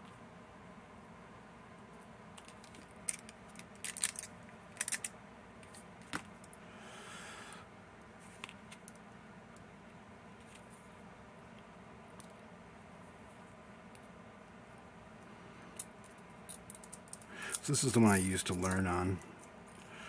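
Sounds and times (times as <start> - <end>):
metal parts clinking: 2.4 - 5.1.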